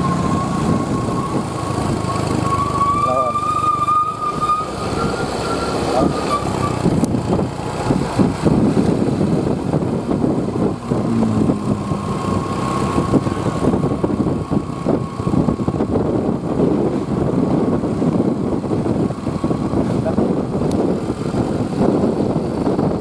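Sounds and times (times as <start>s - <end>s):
bus engine rumbling: 0.0s - 23.0s.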